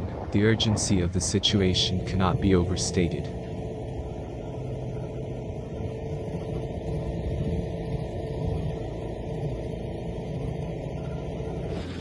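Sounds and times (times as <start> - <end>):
faint hum: 0.0 - 12.0
low mechanical rumble: 0.0 - 12.0.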